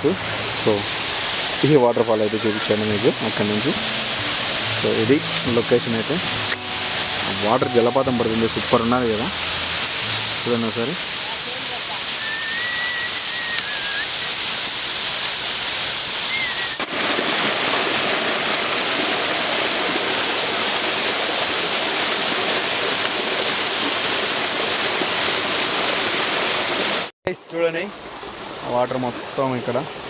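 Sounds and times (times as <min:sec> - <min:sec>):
waterfall roaring: 0:00.0 - 0:27.1
thin high whistle: 0:09.3 - 0:14.4, 0:16.2 - 0:16.8.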